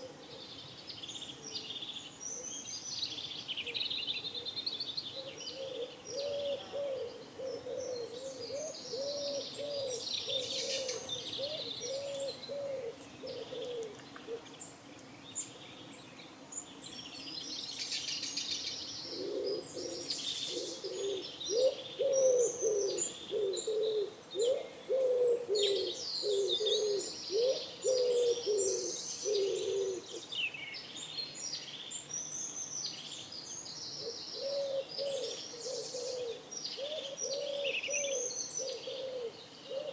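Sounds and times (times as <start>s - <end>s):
songbirds chirping: 0.0s - 39.9s
pigeons cooing: 5.2s - 14.5s, 19.0s - 30.2s, 34.0s - 39.9s.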